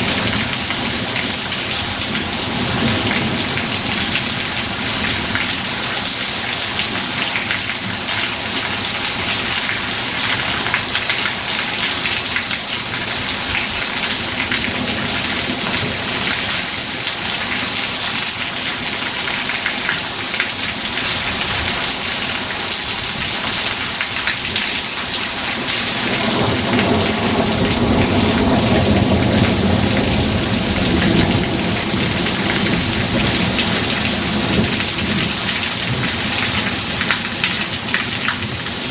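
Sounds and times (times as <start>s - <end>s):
heavy rain falling: 0.0s - 38.9s
rolling thunder rumble: 26.0s - 36.3s.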